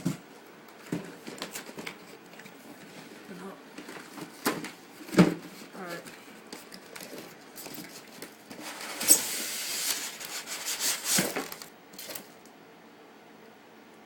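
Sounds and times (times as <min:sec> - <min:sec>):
packaging rustling: 0:03.8 - 0:12.4.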